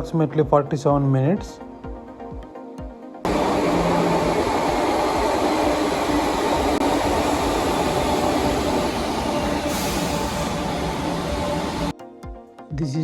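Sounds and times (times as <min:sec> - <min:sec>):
high hiss: 0:03.3 - 0:11.9
train rumbling: 0:03.3 - 0:11.9.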